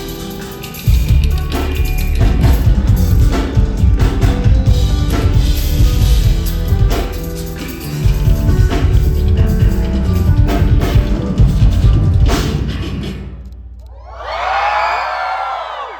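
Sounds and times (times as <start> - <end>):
live band instrumental: 0.0 - 13.6
drums hitting hard: 0.9 - 13.4.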